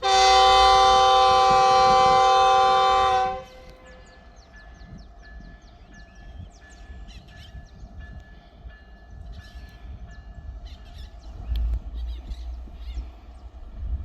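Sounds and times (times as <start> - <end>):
freight train rumble: 0.0 - 14.0
birds chirping: 3.4 - 13.9.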